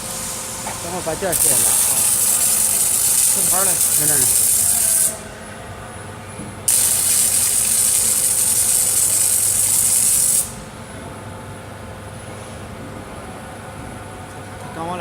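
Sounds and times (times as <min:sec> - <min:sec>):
welding arc hiss: 0:00.0 - 0:05.2, 0:06.7 - 0:10.7.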